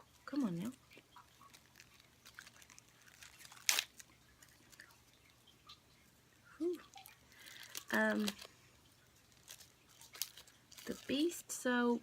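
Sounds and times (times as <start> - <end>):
packaging rustling and clicking: 1.2 - 4.9, 7.3 - 8.6, 9.2 - 11.3.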